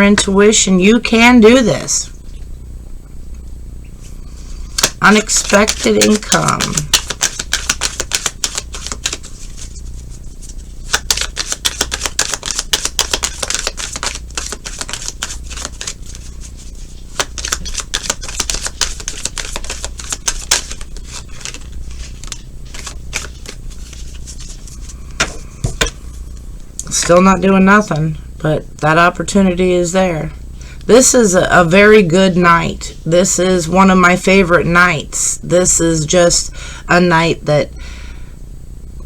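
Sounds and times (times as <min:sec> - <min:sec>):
cards being shuffled: 0:04.7 - 0:27.0.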